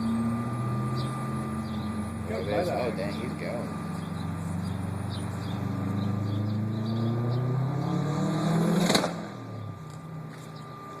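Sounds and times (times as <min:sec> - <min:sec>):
car engine accelerating hard: 0:00.0 - 0:09.6.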